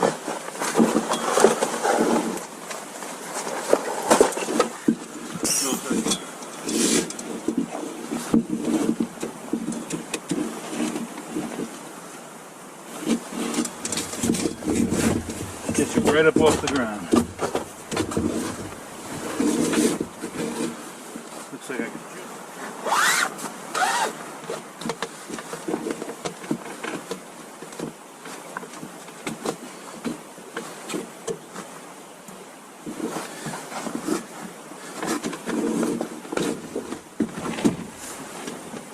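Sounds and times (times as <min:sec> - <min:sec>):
camp gear scraping: 0:00.0 - 0:31.9, 0:32.8 - 0:38.9
tarp rustling and crackling: 0:00.0 - 0:32.0, 0:32.8 - 0:38.9
wind noise on microphone: 0:12.9 - 0:21.0.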